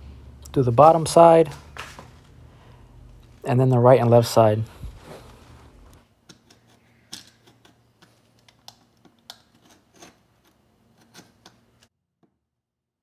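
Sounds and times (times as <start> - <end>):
knife blade scoring wood: 9.3 - 11.7.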